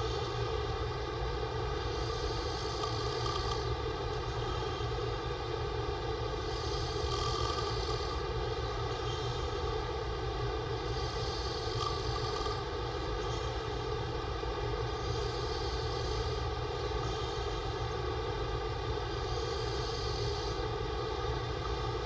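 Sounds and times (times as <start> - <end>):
steady droning hum: 0.0 - 22.0
man snoring: 1.9 - 5.0, 6.4 - 8.3, 10.8 - 13.8, 15.0 - 17.8, 19.1 - 22.0.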